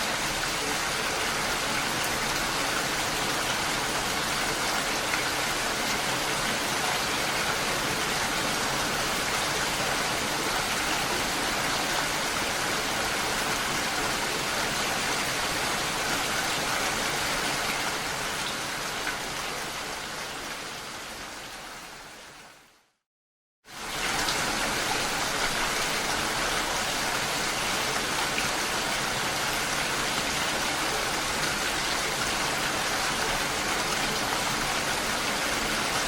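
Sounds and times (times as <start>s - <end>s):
rain pattering: 23.7s - 36.0s.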